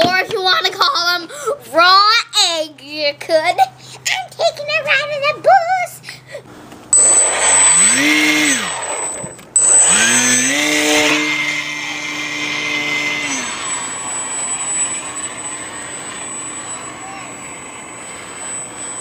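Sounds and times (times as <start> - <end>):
small electric motor whining: 7.0 - 19.0.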